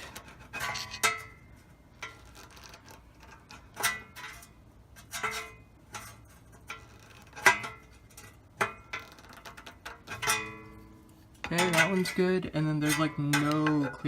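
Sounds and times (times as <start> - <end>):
sheet metal clinking and ringing: 10.0 - 14.0.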